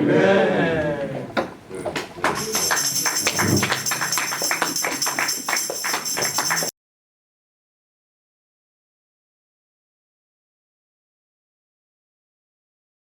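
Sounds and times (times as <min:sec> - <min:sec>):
tambourine jingling beat: 0:02.3 - 0:06.7.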